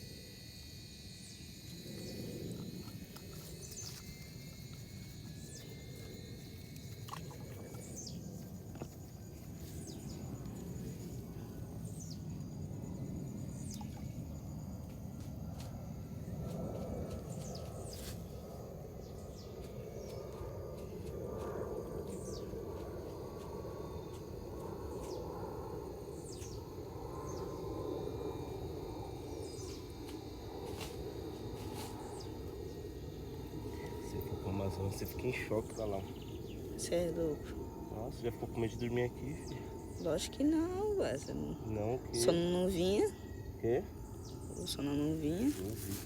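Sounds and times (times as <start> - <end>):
insects trilling: 0.0 - 46.0.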